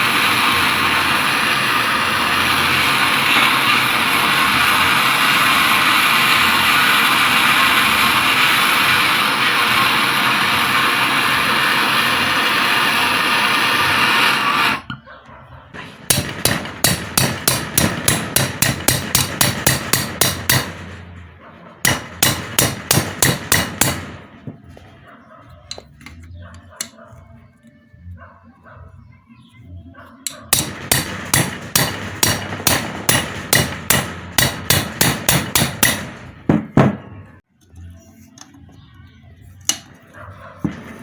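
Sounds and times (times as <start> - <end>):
blowtorch flame hissing: 0.0 - 15.0.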